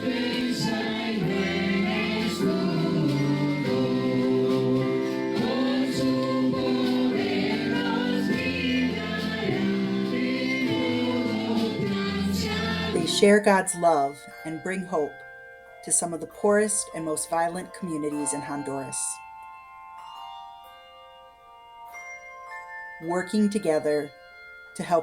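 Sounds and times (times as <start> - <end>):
choir singing a hymn: 0.0 - 13.5.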